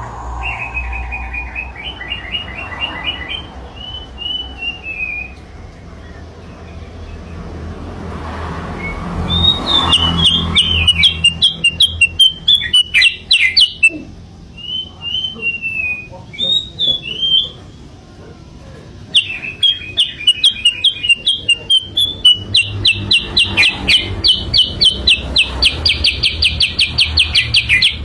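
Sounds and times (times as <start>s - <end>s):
bird chirping song: 0.1s - 7.7s, 8.7s - 18.0s, 19.0s - 28.0s.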